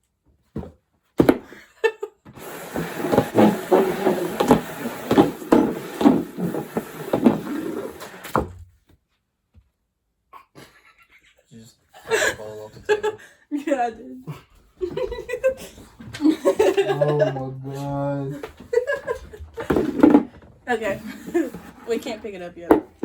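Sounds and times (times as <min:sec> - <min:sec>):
rustling and clattering on a table: 0:02.3 - 0:09.0, 0:18.5 - 0:23.0.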